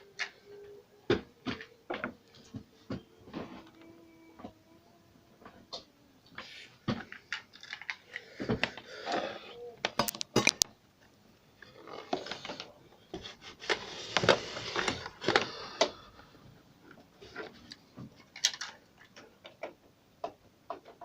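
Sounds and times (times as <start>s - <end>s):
small hard parts clicking: 9.8s - 10.7s, 17.7s - 21.0s
scraping and rustling: 11.9s - 15.6s.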